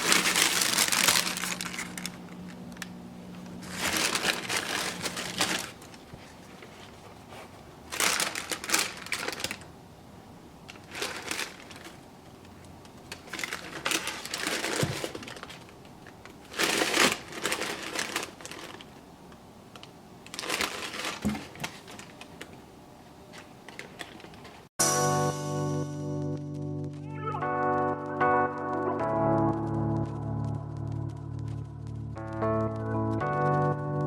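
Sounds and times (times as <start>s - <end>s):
tissue paper rustling: 0.0s - 2.3s, 3.6s - 9.6s, 10.8s - 12.0s, 13.2s - 15.7s, 16.5s - 18.9s, 20.3s - 22.2s.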